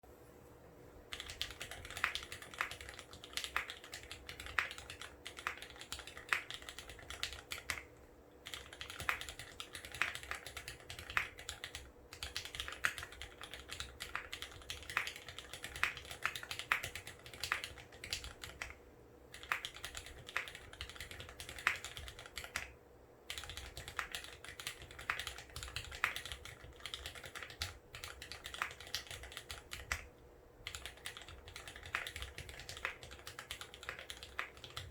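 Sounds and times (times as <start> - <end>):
faint steady hum: 0.0 - 34.9
typing on mechanical keyboard: 1.1 - 34.9.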